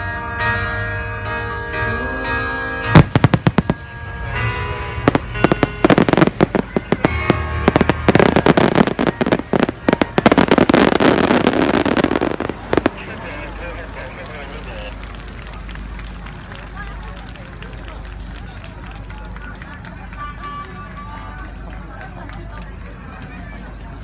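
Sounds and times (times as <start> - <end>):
music: 0.0 - 14.9
fireworks bursting and crackling: 3.0 - 4.2, 5.0 - 14.9.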